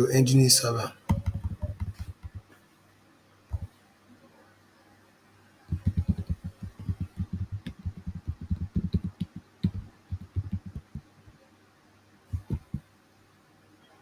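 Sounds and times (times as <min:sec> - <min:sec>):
computer keyboard typing: 0:01.1 - 0:02.4, 0:05.7 - 0:11.0, 0:12.3 - 0:12.8.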